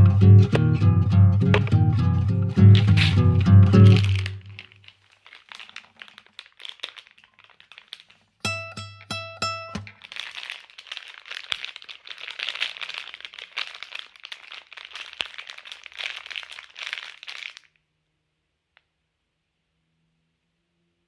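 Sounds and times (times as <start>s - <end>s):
packaging crumpling: 2.6s - 8.4s, 9.8s - 17.8s.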